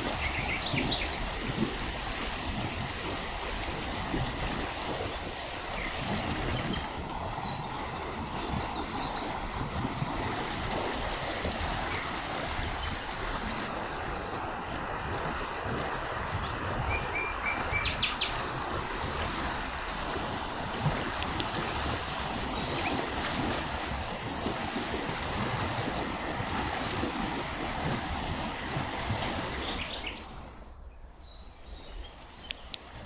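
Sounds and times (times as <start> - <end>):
small birds chirping: 0.0 - 1.8, 3.5 - 10.5, 16.4 - 19.2, 29.4 - 33.0
river water rushing: 0.0 - 30.7.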